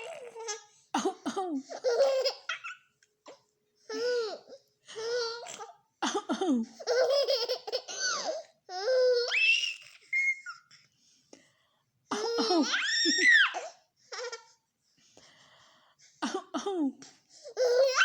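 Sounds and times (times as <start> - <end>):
baby giggling: 1.7 - 2.8, 6.8 - 8.4
baby squealing: 7.7 - 10.7, 17.6 - 18.0.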